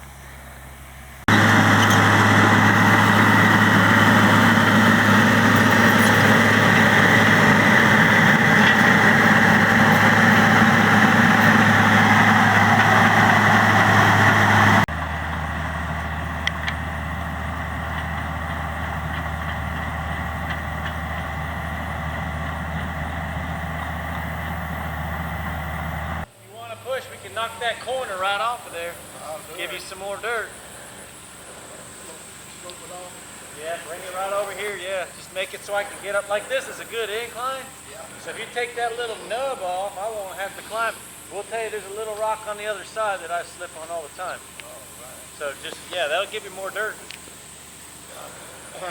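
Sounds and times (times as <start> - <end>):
heavy diesel engine running: 0.0 - 29.5.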